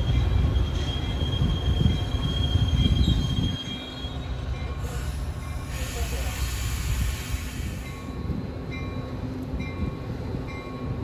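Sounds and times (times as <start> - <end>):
high metallic squeal: 0.0 - 4.4
train rumbling: 0.0 - 11.0.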